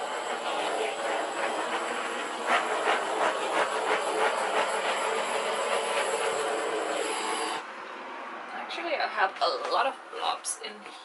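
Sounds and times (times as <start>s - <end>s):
torch flame hissing: 0.0s - 7.7s.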